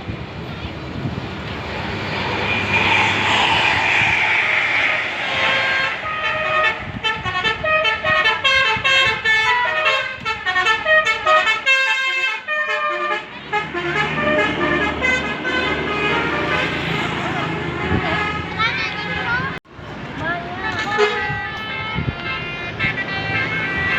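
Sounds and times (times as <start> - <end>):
bus engine hum: 0.0 - 8.5
air horn melody: 5.2 - 16.5.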